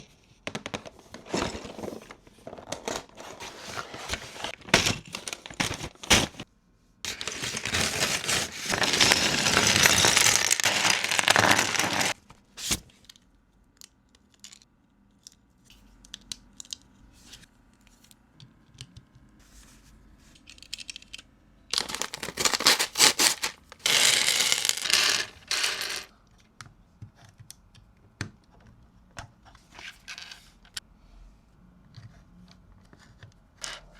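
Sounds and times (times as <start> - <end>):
plastic packaging rustling: 0.6 - 6.4, 7.1 - 12.8, 21.8 - 25.7
plastic bricks clicking and rattling: 7.1 - 12.2, 21.8 - 26.1.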